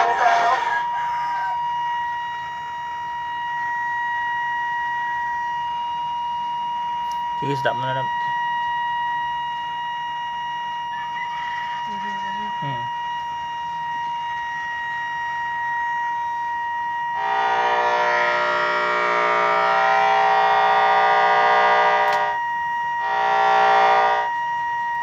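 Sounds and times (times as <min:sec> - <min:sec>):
steady high-pitched tone: 0:17.1 - 0:24.4
buzzing electronic tone: 0:17.2 - 0:24.4.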